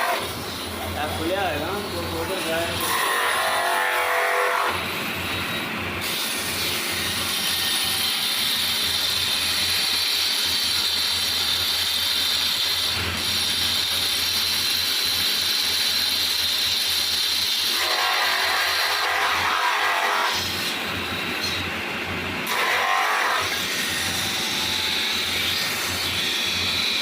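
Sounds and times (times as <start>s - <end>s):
power tool whining: 6.2s - 21.8s, 22.4s - 27.0s.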